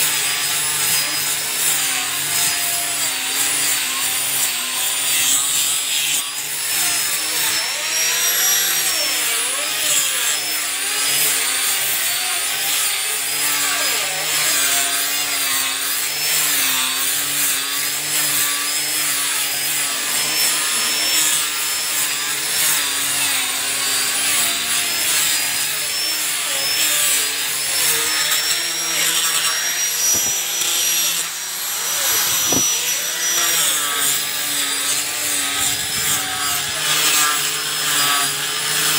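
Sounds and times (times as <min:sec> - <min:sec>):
grinder sanding wood: 0:00.0 - 0:38.9.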